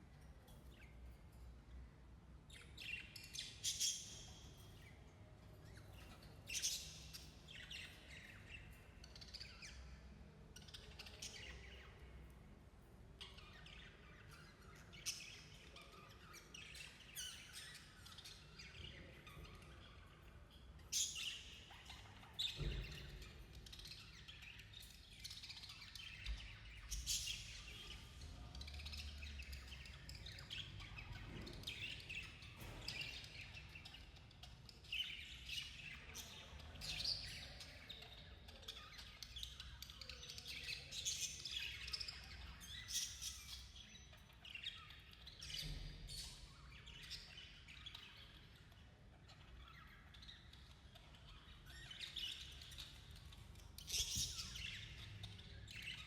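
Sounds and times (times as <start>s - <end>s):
budgerigars chirping: 13.2s - 56.0s.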